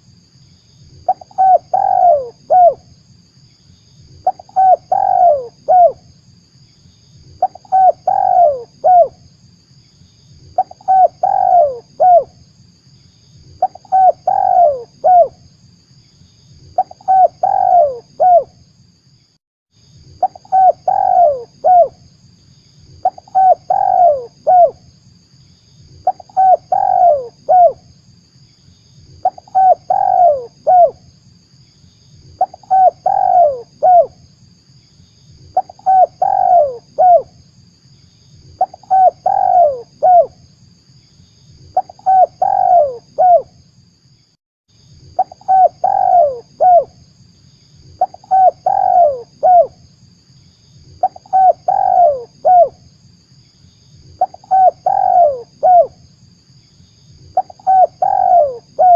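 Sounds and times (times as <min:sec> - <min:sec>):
dove cooing: 0:01.1 - 0:02.8, 0:04.2 - 0:06.0, 0:07.4 - 0:09.2, 0:10.6 - 0:12.3, 0:13.6 - 0:15.4, 0:16.8 - 0:18.5, 0:20.2 - 0:22.0, 0:23.0 - 0:24.8, 0:26.0 - 0:27.8, 0:29.2 - 0:31.0, 0:32.4 - 0:34.2, 0:35.5 - 0:37.3, 0:38.6 - 0:40.3, 0:41.8 - 0:43.5, 0:45.2 - 0:47.0, 0:48.0 - 0:49.8, 0:51.0 - 0:52.8, 0:54.2 - 0:56.0, 0:57.4 - 0:58.9.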